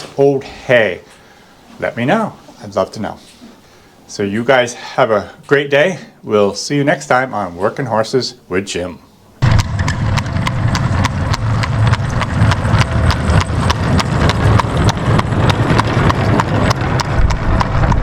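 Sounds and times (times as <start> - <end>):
horse hooves clip-clopping: 9.4 - 18.0
low rumble: 9.4 - 18.0.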